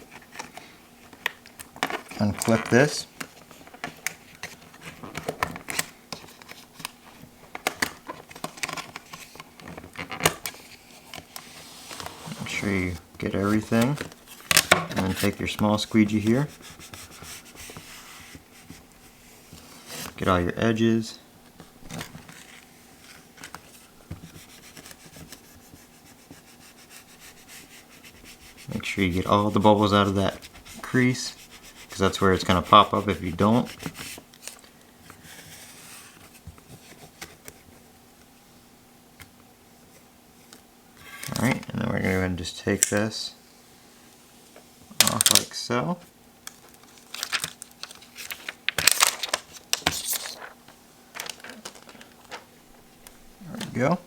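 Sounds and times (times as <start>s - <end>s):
plastic film peeling and crinkling: 46.4s - 53.7s.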